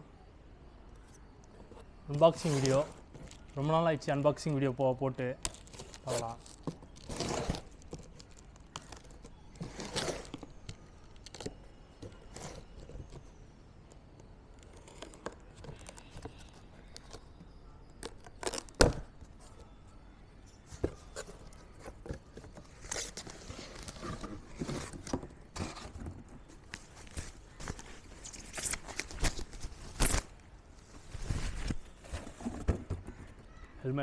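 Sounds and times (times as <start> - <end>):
packaging tearing and crinkling: 2.2 - 3.7, 5.4 - 13.4, 18.0 - 19.2, 26.7 - 30.4.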